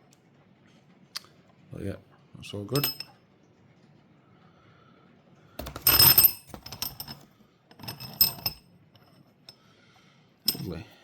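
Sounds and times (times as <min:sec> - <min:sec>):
metal bolts clinking: 0:02.8 - 0:03.1, 0:05.6 - 0:08.6, 0:10.5 - 0:10.8.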